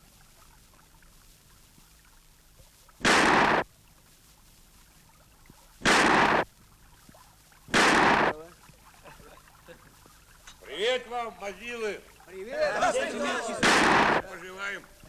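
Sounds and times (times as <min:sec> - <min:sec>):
shotgun blasts with echo: 0:03.0 - 0:03.6, 0:05.8 - 0:06.5, 0:07.7 - 0:08.4, 0:13.6 - 0:14.3.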